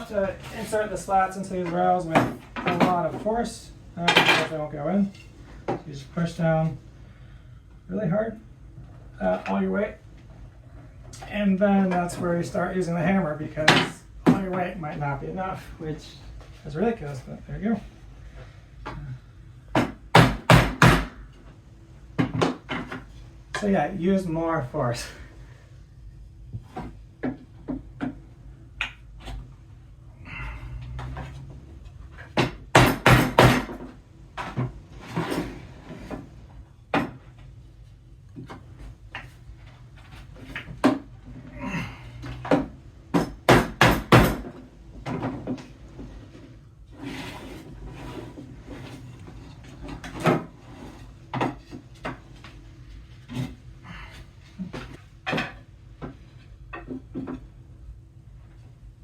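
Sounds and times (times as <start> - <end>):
hammer knocking wooden slats: 19.7 - 21.2, 32.4 - 33.8, 42.4 - 44.5.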